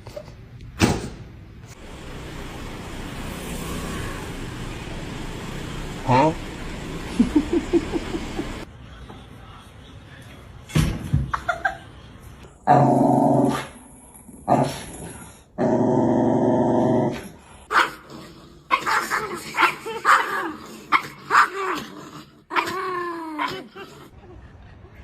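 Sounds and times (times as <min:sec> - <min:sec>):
dog growling: 0:12.6 - 0:18.8
dog barking and yipping: 0:17.7 - 0:18.0.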